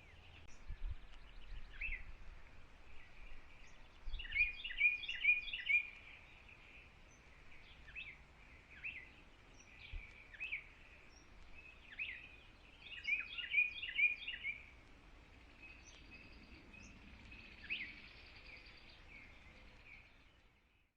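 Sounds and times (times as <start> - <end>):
faint outdoor background hiss: 0.0 - 20.9
songbirds chirping: 0.0 - 20.9.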